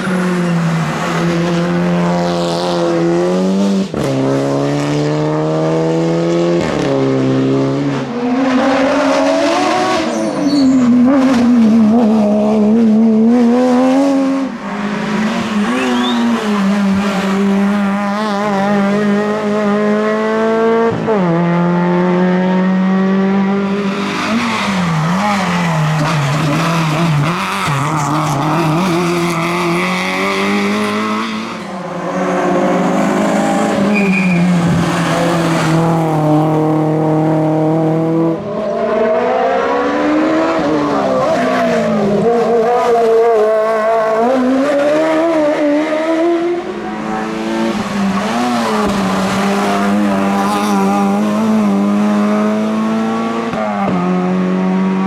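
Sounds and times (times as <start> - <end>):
race car engines at full throttle: 0.0 - 55.0
tyre squeal: 10.0 - 11.2, 15.6 - 16.8, 33.7 - 35.6.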